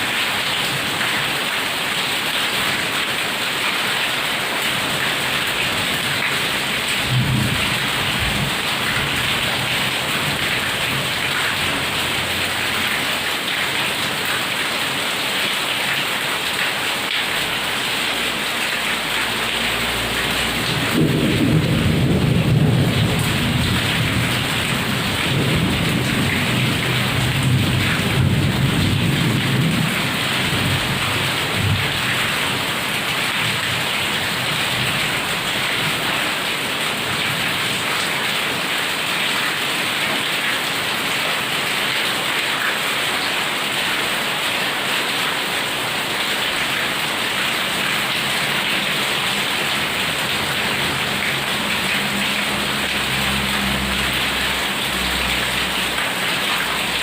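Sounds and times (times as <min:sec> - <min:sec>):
heavy rain falling: 0:00.0 - 0:57.0
thunder rumbling: 0:20.5 - 0:32.0.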